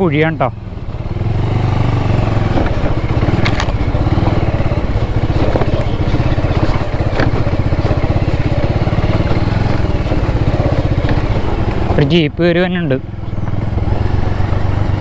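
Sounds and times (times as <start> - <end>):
motorcycle engine at low revs: 0.0 - 15.0
knocks and rattles: 2.1 - 12.0.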